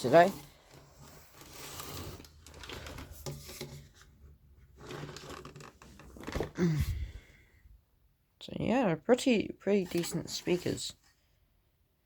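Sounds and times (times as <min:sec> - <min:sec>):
rubbing and scraping on speaker cabinet: 0:00.0 - 0:06.6.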